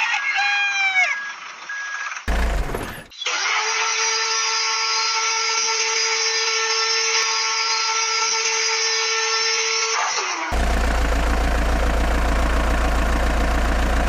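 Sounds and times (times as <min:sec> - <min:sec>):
small electric motor whining: 0:02.3 - 0:10.6.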